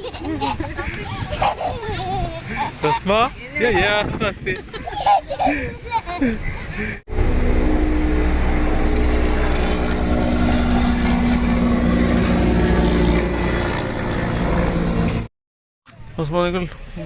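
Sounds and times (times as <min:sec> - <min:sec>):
motorcycle engine running: 0:07.1 - 0:15.3.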